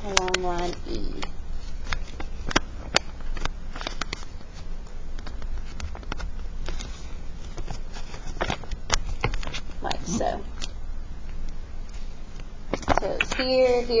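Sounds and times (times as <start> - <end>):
paper being folded and creased: 0.1 - 10.2.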